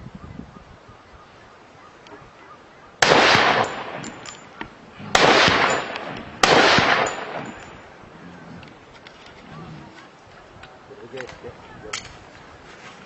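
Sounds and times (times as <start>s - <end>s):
rifle shots: 3.0s - 7.8s.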